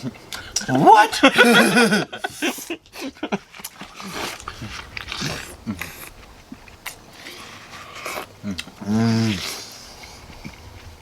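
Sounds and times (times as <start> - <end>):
wet chewing and slurping: 3.4 - 10.9.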